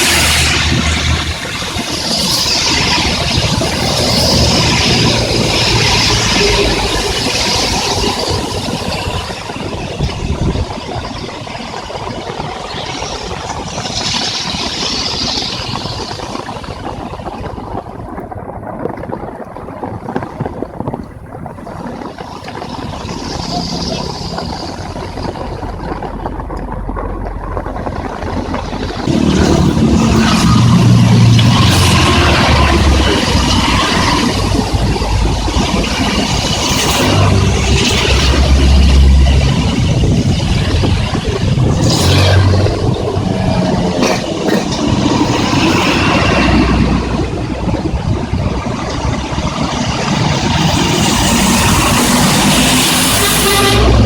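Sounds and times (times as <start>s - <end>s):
heavy rain falling: 0.0s - 54.0s
low traffic rumble: 0.0s - 54.0s
passing vehicle engine and tyres: 0.0s - 54.0s.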